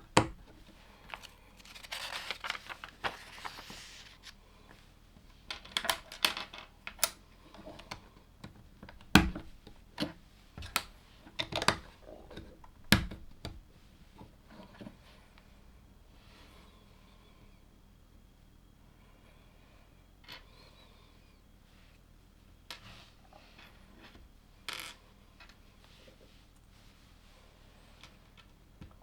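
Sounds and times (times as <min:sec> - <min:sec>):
rustling: 0:00.5 - 0:04.4.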